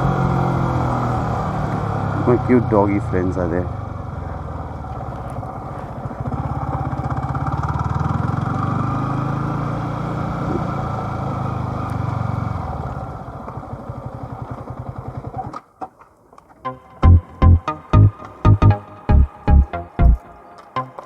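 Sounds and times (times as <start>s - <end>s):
motorbike engine running: 3.8s - 8.7s.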